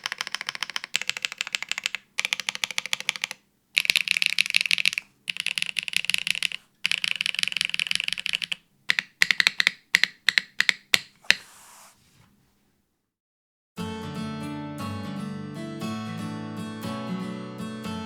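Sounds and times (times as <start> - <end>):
mechanical keyboard typing: 0.0 - 11.4.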